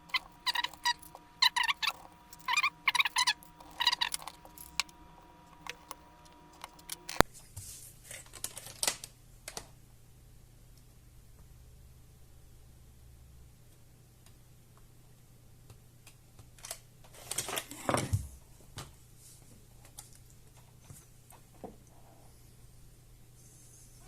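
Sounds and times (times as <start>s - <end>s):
faint steady hum: 0.0s - 17.1s.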